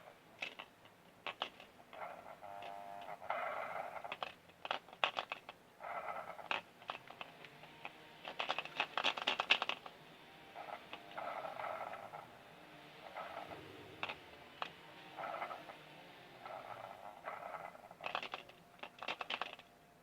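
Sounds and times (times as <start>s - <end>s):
tools clicking and knocking: 0.4s - 5.6s, 6.3s - 10.0s, 13.4s - 15.8s, 16.6s - 19.8s.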